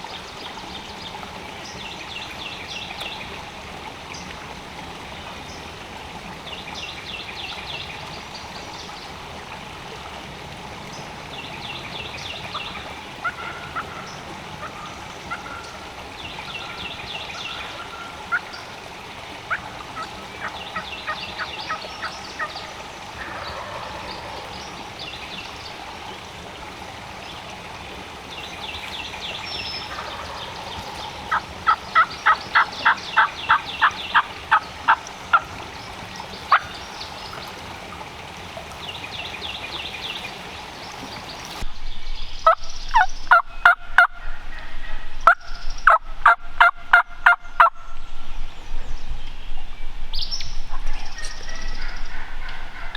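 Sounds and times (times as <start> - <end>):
distant turkey gobbling: 12.5 - 26.2, 28.5 - 37.6, 42.4 - 47.8
turkey yelps: 13.2 - 15.8, 19.5 - 25.0, 29.8 - 35.6, 36.5 - 36.8, 45.2 - 47.7.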